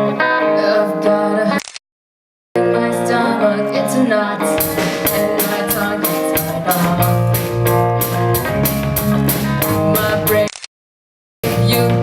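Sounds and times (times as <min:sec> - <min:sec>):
guitar chords: 0:00.0 - 0:01.5, 0:02.6 - 0:10.5, 0:11.4 - 0:12.0
band playing: 0:03.9 - 0:10.5, 0:11.4 - 0:12.0
drum kit beat: 0:04.5 - 0:10.5, 0:11.4 - 0:12.0.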